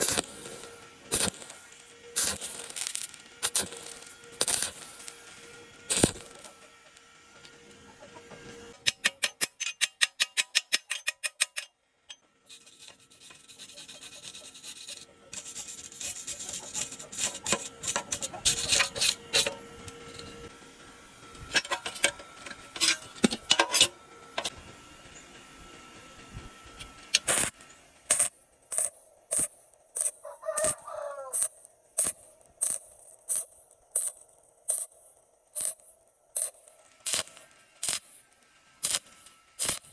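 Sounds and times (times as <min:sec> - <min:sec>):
welding arc crackling: 0:00.0 - 0:07.5, 0:12.5 - 0:20.5, 0:26.7 - 0:39.9
scattered clicks: 0:27.1 - 0:39.9.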